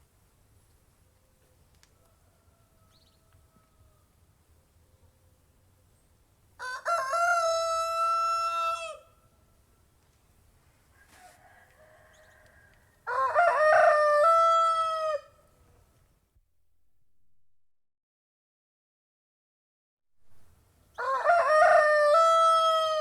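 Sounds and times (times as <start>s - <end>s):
rooster crowing: 2.0s - 4.1s, 6.6s - 9.2s, 10.9s - 15.4s, 21.0s - 23.0s.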